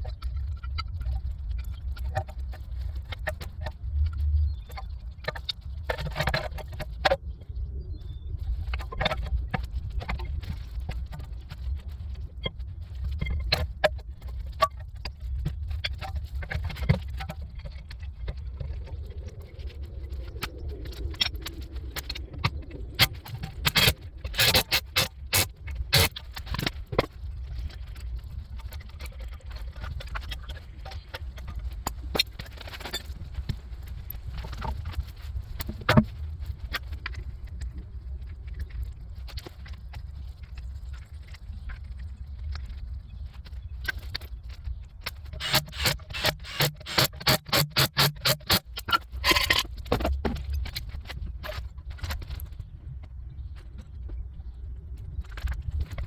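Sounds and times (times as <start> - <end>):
low rumble: 17.5 - 24.6.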